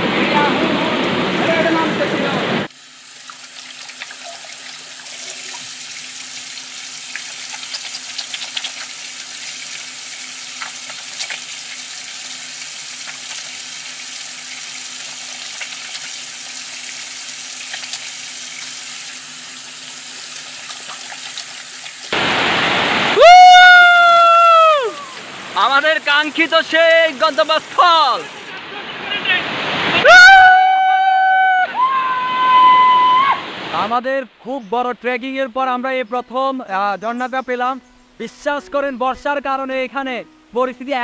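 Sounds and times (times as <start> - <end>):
heavy rain falling: 0.0 - 2.7, 22.1 - 30.2
drip-like ticks: 3.2 - 4.8, 7.0 - 11.9, 12.6 - 13.6, 17.6 - 18.7.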